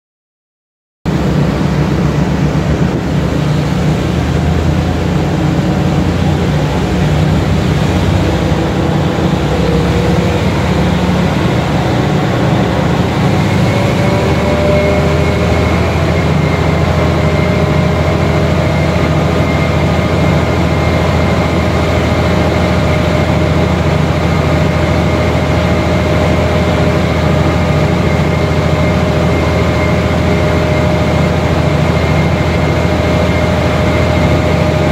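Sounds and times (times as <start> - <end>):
air compressor running: 1.1 - 34.9
locomotive idling with low rumble: 1.1 - 34.9
thin rising whine: 1.1 - 34.9.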